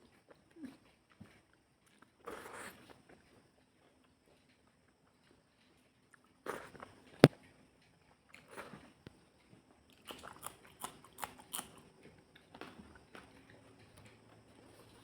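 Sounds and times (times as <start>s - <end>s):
person chewing: 9.9s - 14.2s.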